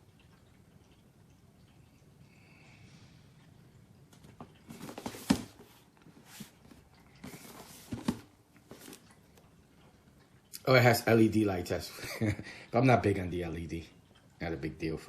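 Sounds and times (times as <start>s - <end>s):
rustling and scraping: 4.2s - 9.4s.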